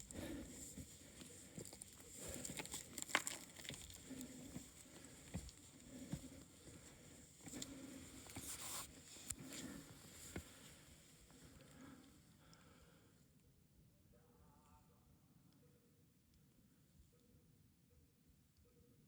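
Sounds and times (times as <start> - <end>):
soft footsteps: 0.0 - 11.4.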